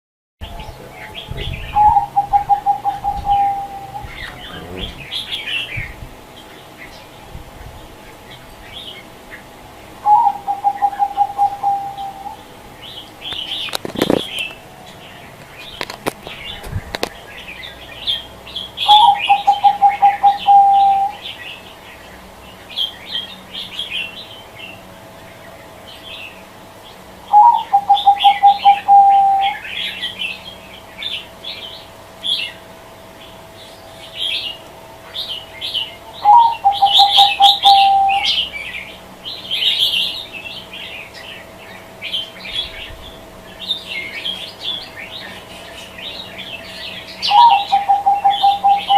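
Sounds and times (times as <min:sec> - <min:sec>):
small birds chirping: 0:00.4 - 0:48.9
dove cooing: 0:00.5 - 0:06.0, 0:10.0 - 0:12.4, 0:18.8 - 0:21.3, 0:27.3 - 0:29.8, 0:35.2 - 0:38.5, 0:47.2 - 0:48.9.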